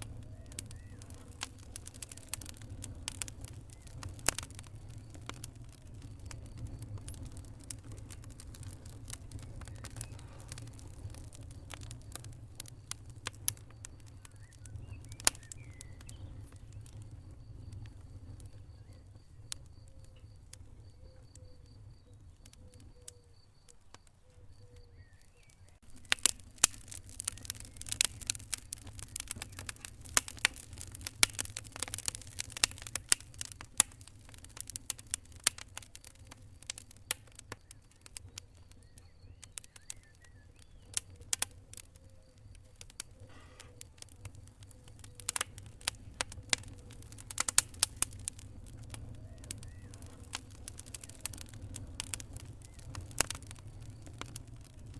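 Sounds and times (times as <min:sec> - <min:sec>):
wood fire crackling: 0:00.0 - 0:54.9.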